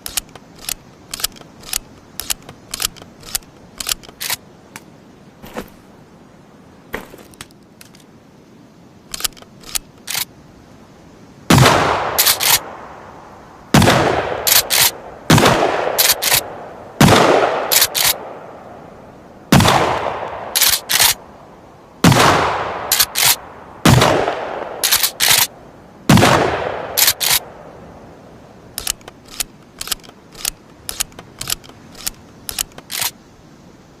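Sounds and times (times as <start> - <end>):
gun action clicks: 0.0 - 4.9, 9.1 - 10.3, 12.2 - 12.7, 14.5 - 15.0, 16.0 - 16.5, 17.7 - 18.2, 20.3 - 21.2, 22.9 - 23.4, 24.8 - 25.5, 26.9 - 27.5, 28.8 - 33.2
shotgun blasts echoing: 11.5 - 12.8, 13.7 - 18.4, 19.5 - 21.0, 22.0 - 25.5, 26.1 - 27.5.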